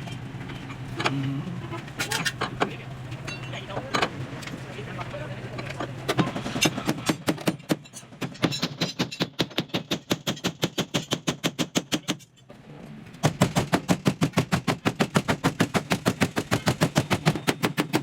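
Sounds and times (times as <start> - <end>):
rapid strikes on car body panel: 9.1 - 12.1, 13.2 - 18.0.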